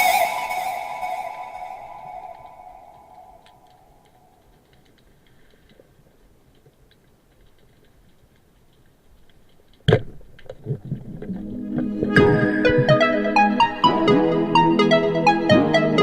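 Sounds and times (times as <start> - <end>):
music: 0.0 - 3.5, 11.3 - 16.0
underwater ticking and crackling: 1.3 - 13.6.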